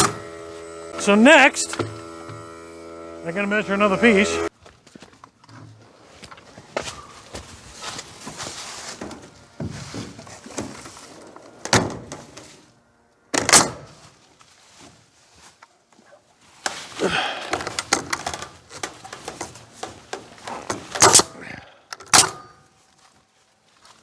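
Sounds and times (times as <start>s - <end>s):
clicks: 0.0s - 4.5s.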